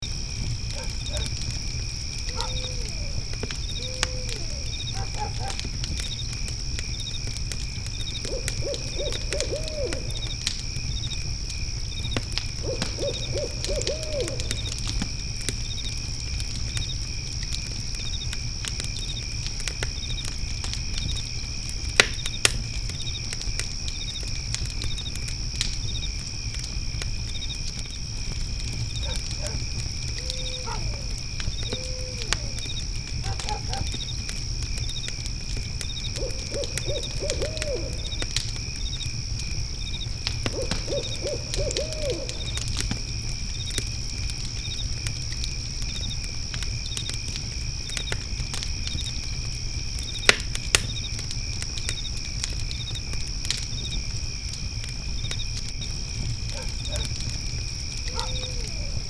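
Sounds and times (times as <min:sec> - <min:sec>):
cricket chirping: 0:00.0 - 0:59.0
fire crackling: 0:00.0 - 0:59.0
fire popping: 0:00.0 - 0:59.0
insects trilling: 0:00.0 - 0:59.0
owl hooting: 0:02.3 - 0:05.6, 0:08.3 - 0:10.3, 0:12.6 - 0:14.6, 0:30.2 - 0:32.6, 0:36.2 - 0:38.2, 0:40.5 - 0:42.5, 0:58.1 - 0:59.0.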